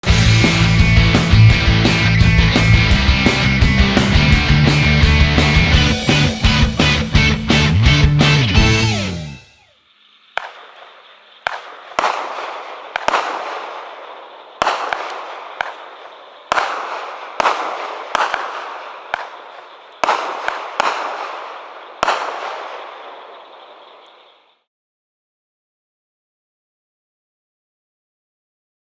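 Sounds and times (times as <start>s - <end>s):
firework hiss and crackle: 9.6s - 24.6s
firework bangs: 9.7s - 24.3s.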